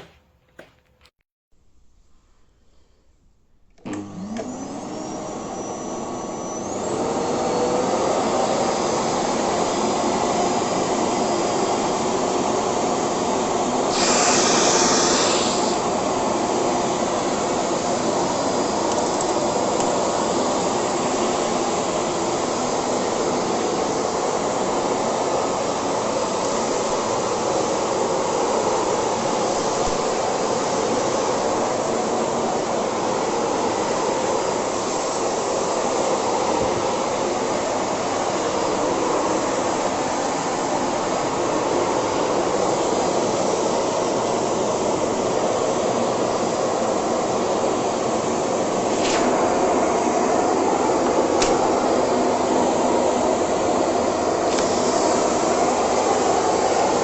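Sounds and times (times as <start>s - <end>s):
vacuum cleaner motor whine: 3.8s - 57.0s.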